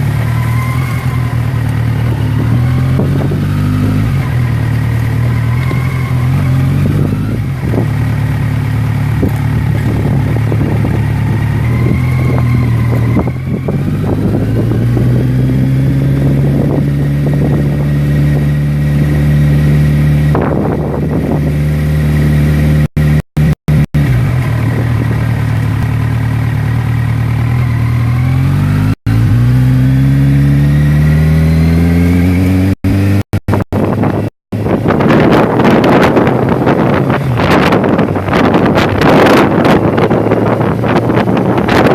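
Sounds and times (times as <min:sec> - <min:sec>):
vehicle engine running: 0:00.0 - 0:41.9.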